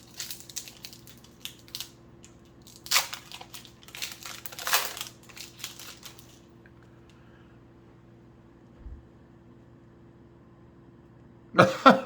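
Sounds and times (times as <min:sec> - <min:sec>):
wrapper tearing and crinkling: 0:00.0 - 0:06.5.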